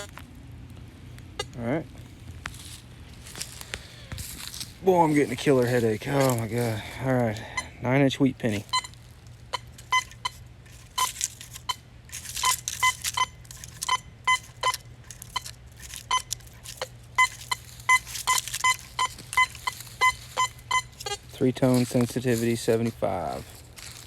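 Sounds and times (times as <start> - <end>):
metal detector beeps: 5.2 - 7.8, 8.4 - 23.4.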